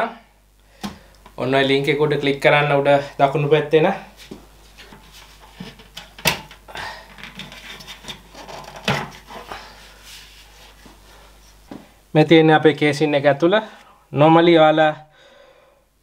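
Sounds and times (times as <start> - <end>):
soft rubbing and handling: 4.0 - 6.0, 7.3 - 12.1.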